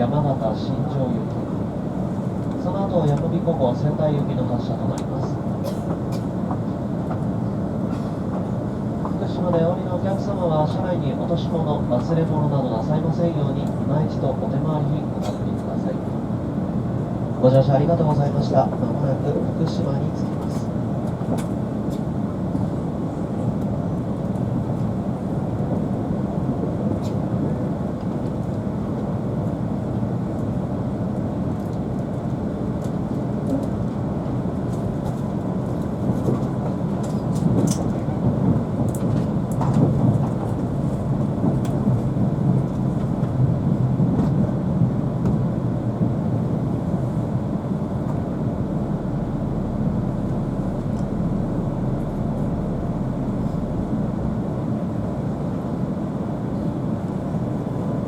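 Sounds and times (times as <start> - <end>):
train running low rumble: 0.0 - 58.0
faint steady whine: 40.5 - 58.0.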